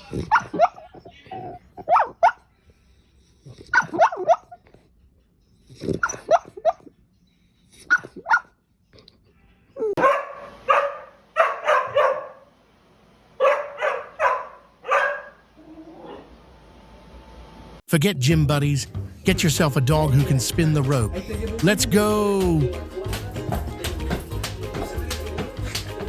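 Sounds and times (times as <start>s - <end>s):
dog barking: 1.8s - 2.4s, 3.7s - 4.6s, 7.9s - 8.6s, 10.0s - 12.5s, 13.4s - 15.4s.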